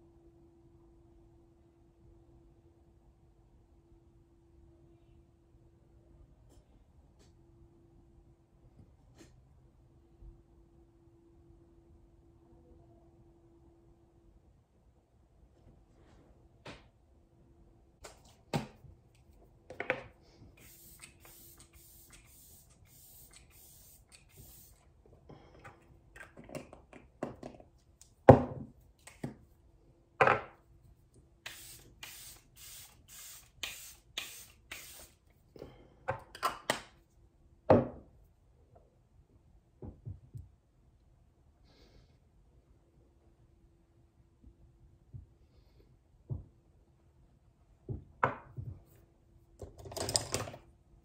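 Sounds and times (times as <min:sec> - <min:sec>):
pump spray bottle spritzing: 0:20.6 - 0:24.8, 0:31.4 - 0:35.2.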